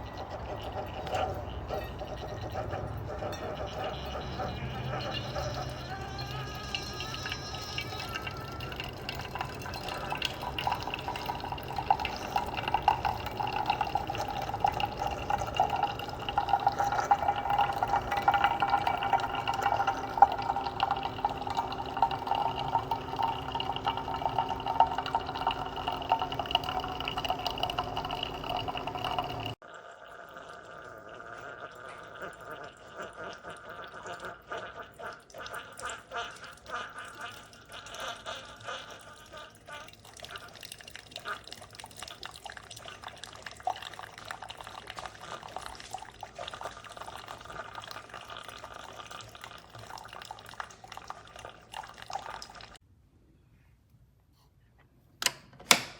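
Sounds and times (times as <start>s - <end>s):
coffee machine hum: 0.0s - 29.6s
coffee streaming into a mug: 0.0s - 52.8s
faint dripping: 0.0s - 52.8s.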